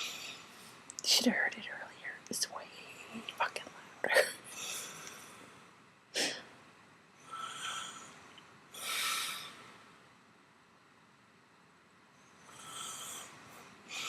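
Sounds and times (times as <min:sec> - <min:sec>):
woman snorting in sleep: 0:00.0 - 0:00.5, 0:04.1 - 0:05.4, 0:06.2 - 0:06.4, 0:07.2 - 0:09.6, 0:12.5 - 0:14.0
noisy breaths: 0:00.0 - 0:00.9, 0:02.7 - 0:06.6, 0:07.2 - 0:09.9, 0:12.2 - 0:14.0.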